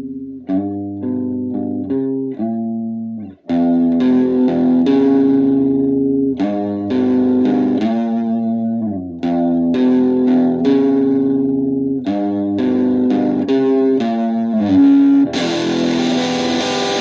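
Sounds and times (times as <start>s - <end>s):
guitar chords: 0.0s - 17.0s
bass line: 15.3s - 17.0s.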